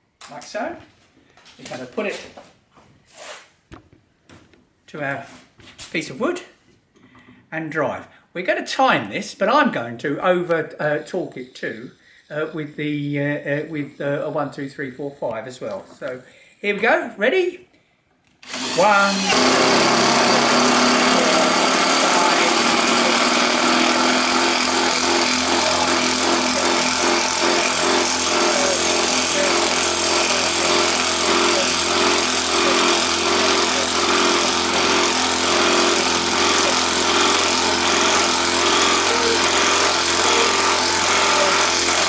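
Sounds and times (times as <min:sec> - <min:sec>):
impact driver hammering: 0:18.4 - 0:42.0.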